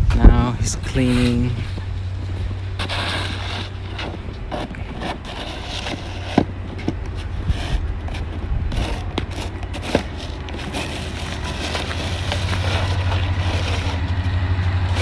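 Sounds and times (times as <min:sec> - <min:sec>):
low engine hum: 0:00.0 - 0:15.0
snow scraping strokes: 0:01.0 - 0:14.2.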